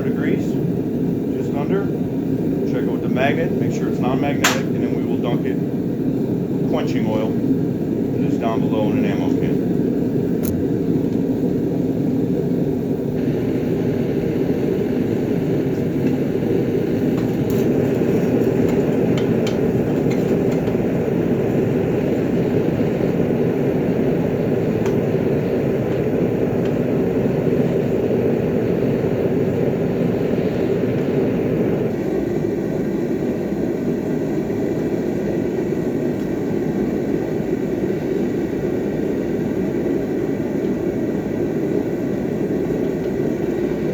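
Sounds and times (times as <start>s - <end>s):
forge heavy rushing noise: 2.8s - 5.2s, 13.2s - 32.0s.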